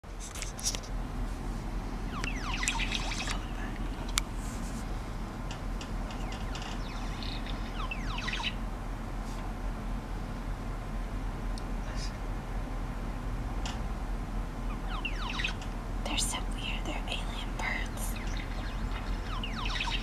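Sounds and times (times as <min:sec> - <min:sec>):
birds calling in falling notes: 0:01.7 - 0:08.7, 0:14.6 - 0:20.0.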